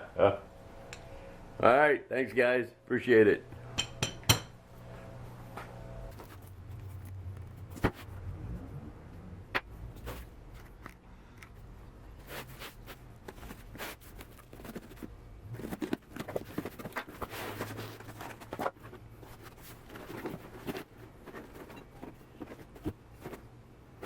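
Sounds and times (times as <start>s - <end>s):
packaging rustling: 12.2s - 23.6s.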